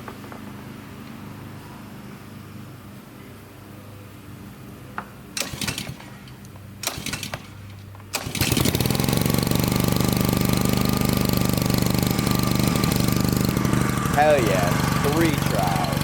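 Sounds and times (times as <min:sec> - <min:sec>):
recoil starter pulls: 0:05.4 - 0:16.0
small gasoline engine running: 0:05.4 - 0:16.0.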